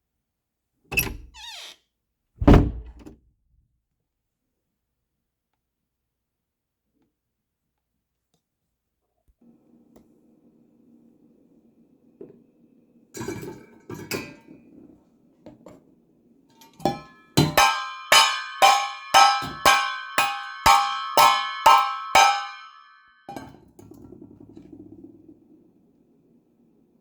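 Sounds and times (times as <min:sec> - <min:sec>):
ringing object struck: 0:17.6 - 0:23.1.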